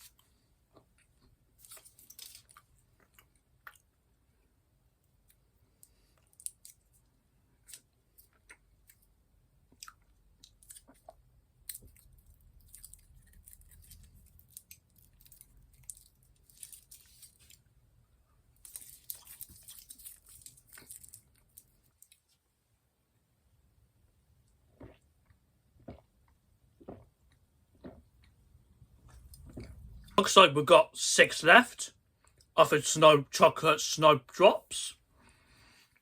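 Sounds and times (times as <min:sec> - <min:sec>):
person chewing chocolate: 0:00.0 - 0:04.2, 0:05.2 - 0:17.7, 0:18.6 - 0:22.3, 0:24.5 - 0:30.2.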